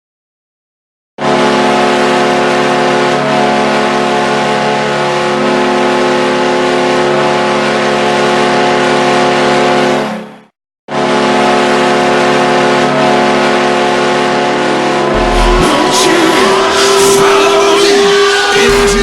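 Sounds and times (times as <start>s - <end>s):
goal horn blasting: 14.9s - 19.0s.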